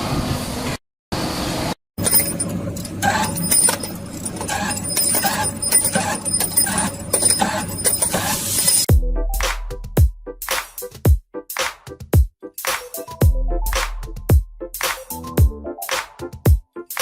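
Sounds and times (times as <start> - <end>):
steady machinery din: 2.0 - 8.6.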